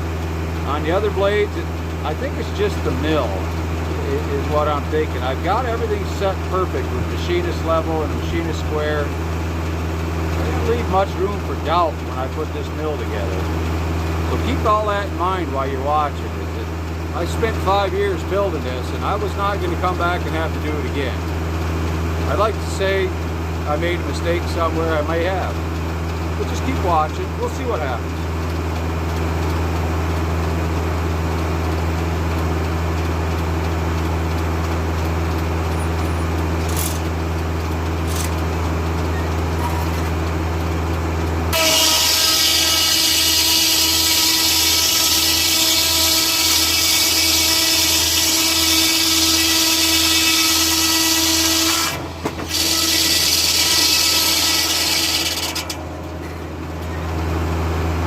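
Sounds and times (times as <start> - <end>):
saw cutting log with whining ring: 0.0 - 29.4, 41.5 - 57.2
tractor engine humming: 0.0 - 58.0
saw blade spinning: 41.5 - 55.8.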